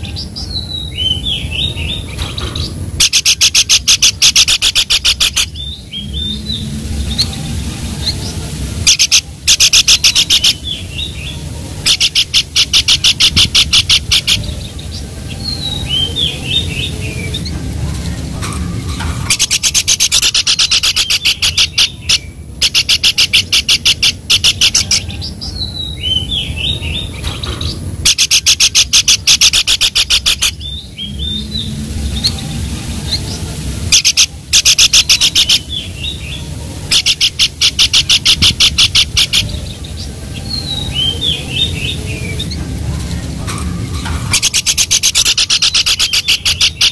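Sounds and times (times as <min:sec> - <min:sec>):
bird rattling notes: 0:41.6 - 0:46.9.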